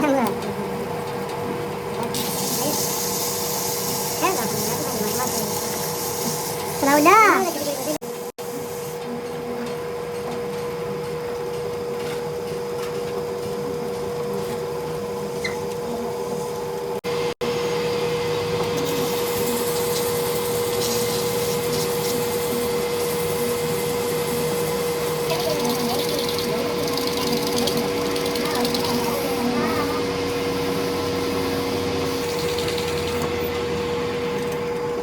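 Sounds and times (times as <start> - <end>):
workshop machine running: 0.0 - 35.0.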